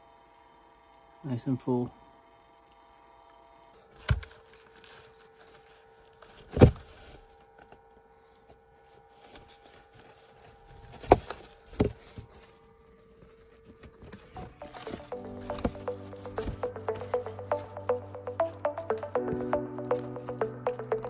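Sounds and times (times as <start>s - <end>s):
steady hum: 10.4s - 21.0s.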